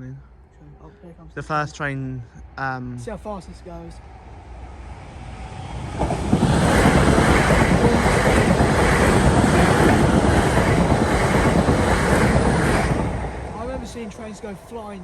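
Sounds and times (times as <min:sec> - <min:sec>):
train wheels rushing on rails: 0:04.3 - 0:15.0.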